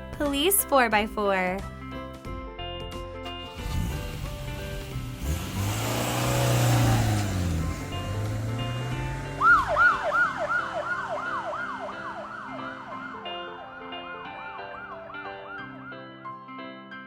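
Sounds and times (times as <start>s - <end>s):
low engine rumble: 6.5s - 13.4s
light piano music: 7.4s - 17.0s
police siren yelping: 9.3s - 15.9s.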